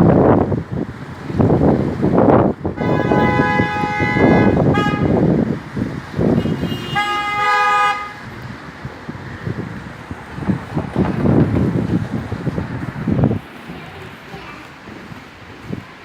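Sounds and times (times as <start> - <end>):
wind buffeting microphone: 0.0 - 16.0
train horn blasts: 2.8 - 5.2, 6.4 - 8.2.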